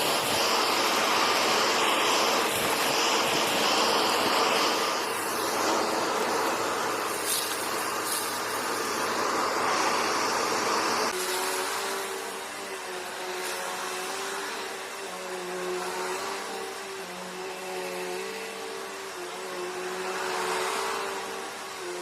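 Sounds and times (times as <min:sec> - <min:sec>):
vacuum cleaner running: 0:00.0 - 0:22.0.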